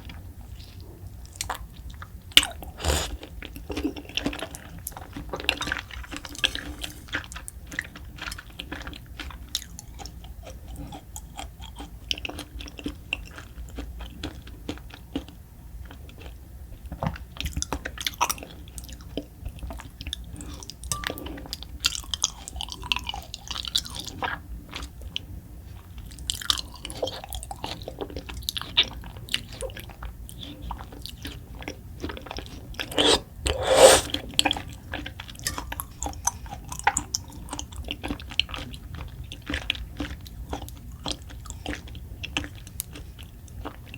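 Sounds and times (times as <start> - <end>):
wet chewing: 32.9 - 34.1.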